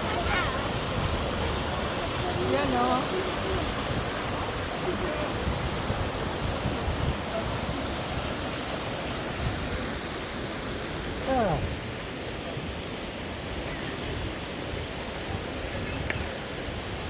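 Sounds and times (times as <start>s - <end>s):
wind rumble on microphone: 0.0s - 10.0s
waterfall rushing: 0.0s - 17.0s.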